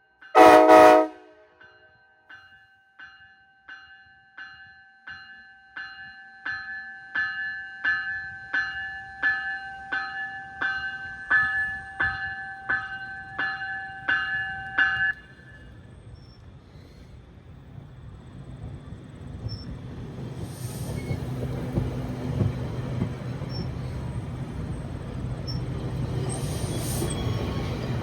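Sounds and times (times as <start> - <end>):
train warning bell ringing: 0.2 - 16.4, 18.3 - 28.0
train low rumble: 6.0 - 28.0.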